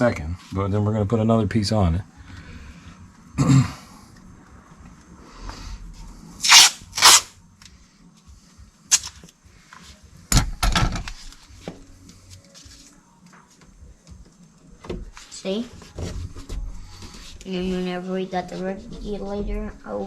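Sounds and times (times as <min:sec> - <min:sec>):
adhesive tape tearing: 0:06.4 - 0:07.3, 0:08.9 - 0:09.2.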